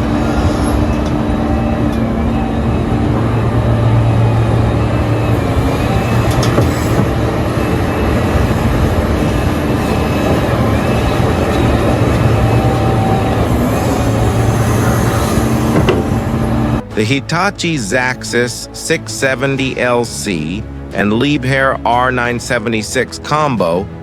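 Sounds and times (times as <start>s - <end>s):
faint high wavering whine: 0.0s - 16.9s
diesel engines humming: 0.0s - 24.0s.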